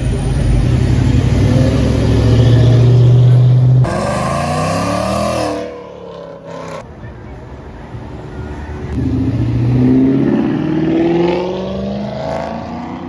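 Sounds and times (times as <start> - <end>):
car engine high revs: 0.0 - 6.8.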